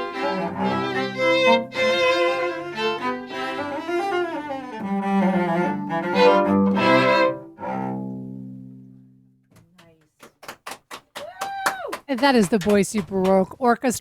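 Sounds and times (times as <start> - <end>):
string orchestra playing: 0.0 - 8.8.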